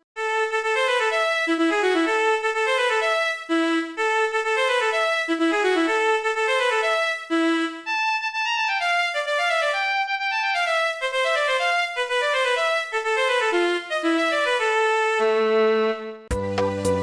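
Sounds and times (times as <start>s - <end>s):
synthesized phone ringtone melody: 3.0s - 16.3s.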